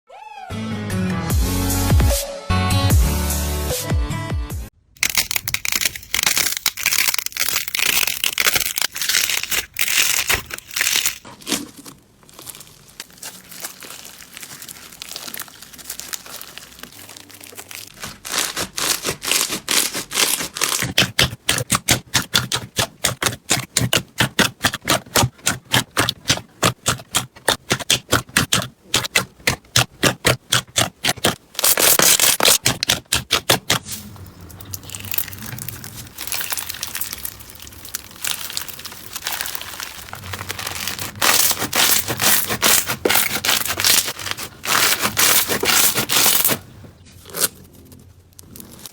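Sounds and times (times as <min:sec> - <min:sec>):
slime crackling pops: 0:34.9 - 0:46.6.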